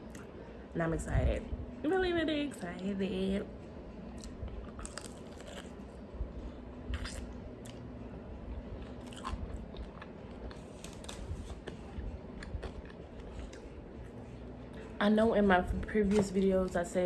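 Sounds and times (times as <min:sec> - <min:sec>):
food crunches: 0:04.2 - 0:05.9, 0:06.9 - 0:07.9, 0:08.8 - 0:13.8
person chewing food: 0:04.2 - 0:05.9, 0:06.9 - 0:07.9, 0:08.8 - 0:14.1.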